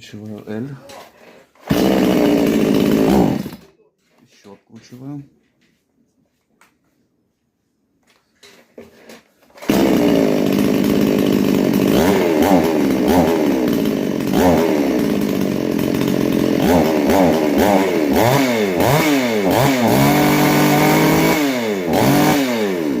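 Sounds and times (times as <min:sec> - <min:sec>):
chainsaw engine revving: 0:01.6 - 0:03.7, 0:09.6 - 0:23.0.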